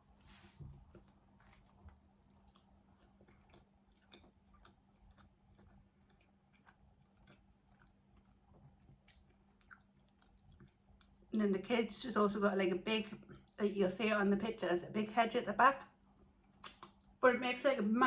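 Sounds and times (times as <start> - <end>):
chewing food: 0.6 - 11.3, 16.1 - 17.2
soft mouth clicks: 16.6 - 17.0.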